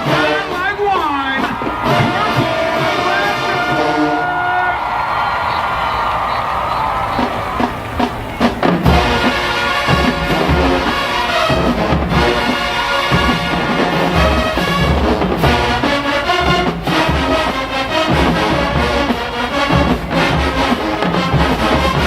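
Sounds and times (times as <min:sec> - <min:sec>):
brass section playing tune: 0:00.0 - 0:22.0
drum line low hits: 0:00.0 - 0:22.0.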